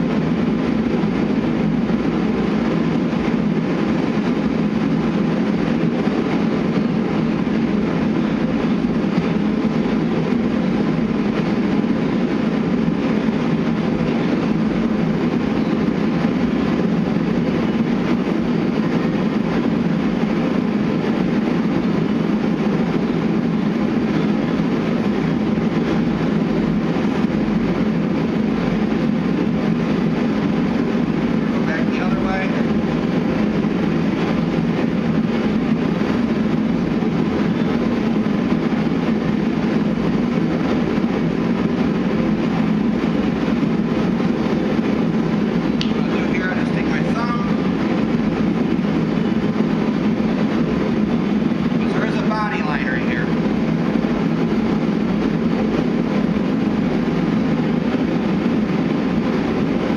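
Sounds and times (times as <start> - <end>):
machine droning with low hum: 0.0 - 59.9.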